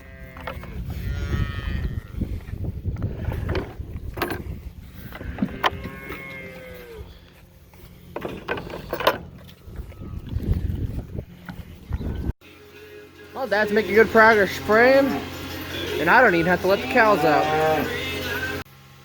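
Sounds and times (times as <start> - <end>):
cows mooing: 0.0 - 10.5, 14.0 - 18.5.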